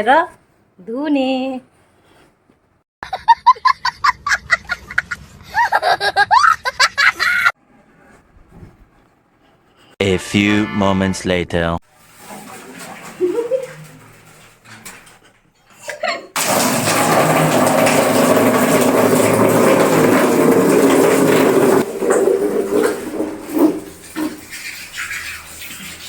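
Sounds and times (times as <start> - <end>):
water running from a tap into a bucket: 11.9 - 15.2, 16.4 - 26.0.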